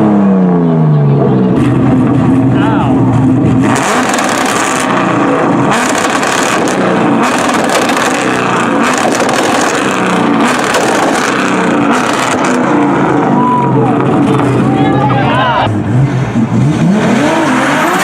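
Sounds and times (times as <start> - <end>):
car engine revving: 0.0 - 18.0
exhaust crackles and pops: 1.5 - 15.2.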